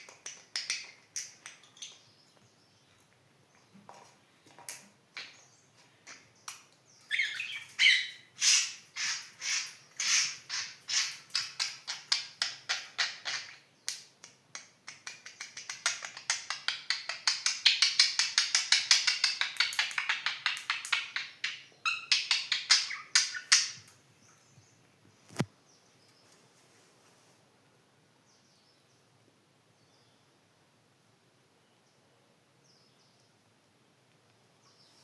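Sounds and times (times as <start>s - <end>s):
budgies chirping: 6.1s - 13.6s, 19.4s - 23.9s
sharp click: 25.3s - 25.5s.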